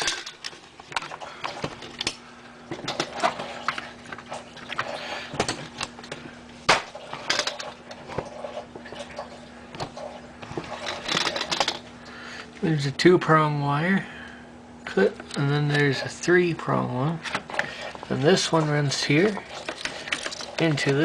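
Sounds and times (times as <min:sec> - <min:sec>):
handling clicks and rustles: 0:00.0 - 0:11.9, 0:17.1 - 0:21.0
faint steady hum: 0:00.0 - 0:21.0.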